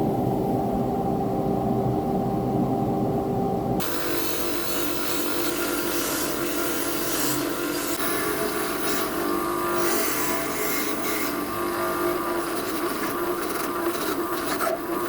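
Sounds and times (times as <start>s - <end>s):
angle grinder grinding steel: 3.9s - 14.2s.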